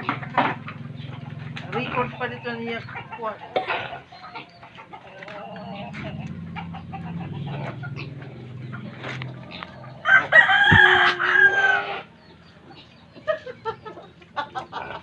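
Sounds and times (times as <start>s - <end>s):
chickens clucking: 0.0s - 15.0s
rooster crowing: 9.9s - 12.1s.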